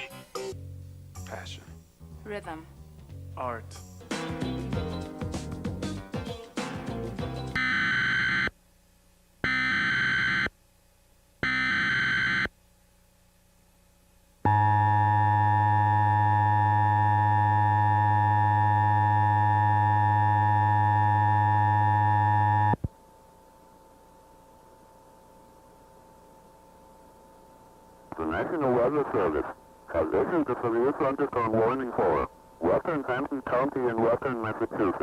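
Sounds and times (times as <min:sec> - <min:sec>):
faint hum: 0:07.6 - 0:35.0
emergency attention tone: 0:14.5 - 0:22.8.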